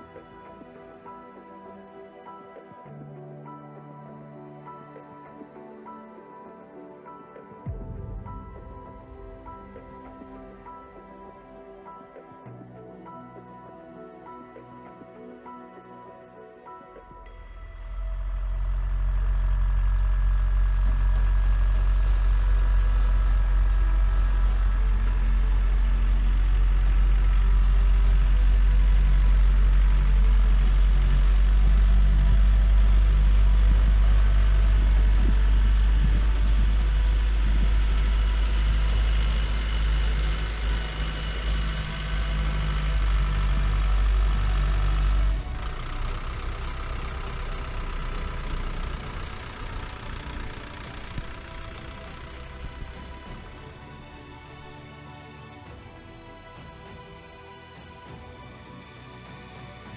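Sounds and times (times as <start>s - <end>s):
diesel engine rumbling: 17.8s - 54.8s.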